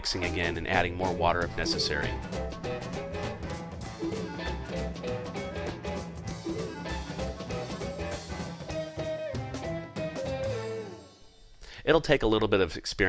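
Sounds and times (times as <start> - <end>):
instrumental tune with drum beat: 0.0 - 11.4.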